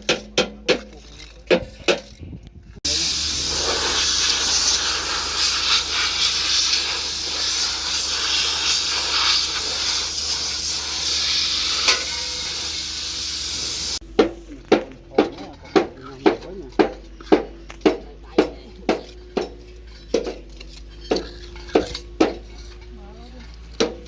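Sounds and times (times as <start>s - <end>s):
loud steady hiss: 2.9s - 14.0s.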